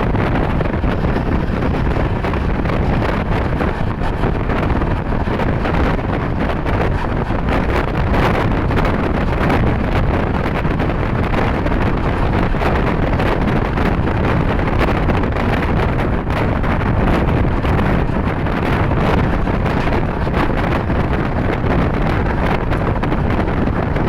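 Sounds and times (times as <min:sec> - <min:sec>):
wind noise on microphone: 0:00.0 - 0:24.0.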